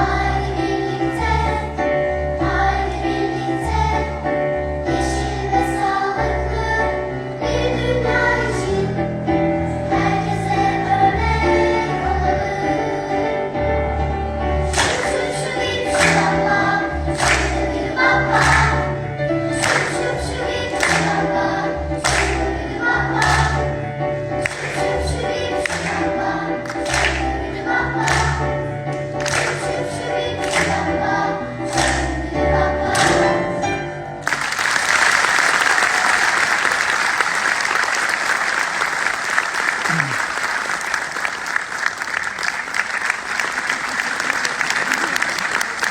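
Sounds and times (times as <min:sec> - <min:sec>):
children's choir singing: 0:00.0 - 0:34.6
audience applause: 0:17.1 - 0:18.8, 0:19.6 - 0:20.1, 0:22.0 - 0:22.4, 0:26.7 - 0:27.2, 0:34.2 - 0:45.9.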